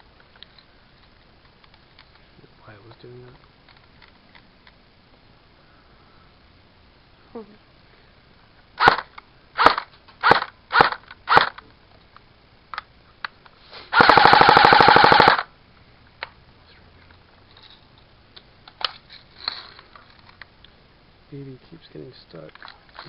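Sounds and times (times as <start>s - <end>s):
airsoft rifle shots: 8.8s - 11.6s, 13.9s - 15.5s.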